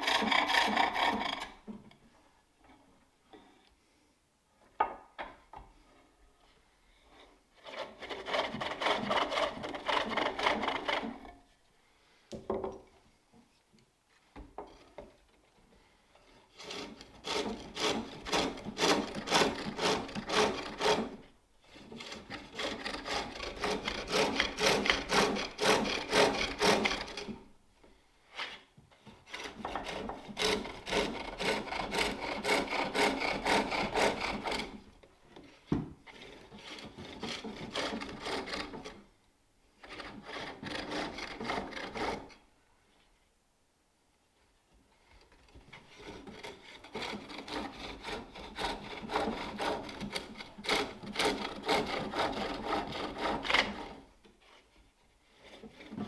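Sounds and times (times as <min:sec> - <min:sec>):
tool shaving wood on lathe: 0:00.0 - 0:01.6, 0:07.6 - 0:11.2, 0:16.3 - 0:27.4, 0:29.1 - 0:34.9, 0:36.1 - 0:39.0, 0:39.8 - 0:42.3, 0:45.9 - 0:54.1, 0:55.4 - 0:56.0.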